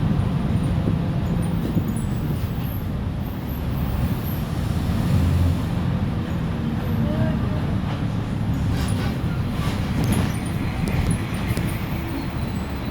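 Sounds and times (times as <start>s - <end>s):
bus diesel engine drone: 0.0s - 12.9s.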